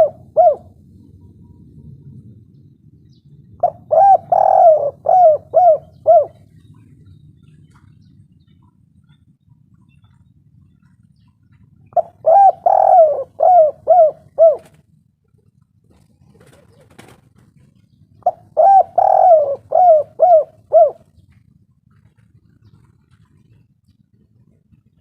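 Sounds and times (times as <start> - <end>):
dove cooing: 0.0 - 2.1, 3.6 - 8.1, 10.8 - 14.8, 15.9 - 24.9.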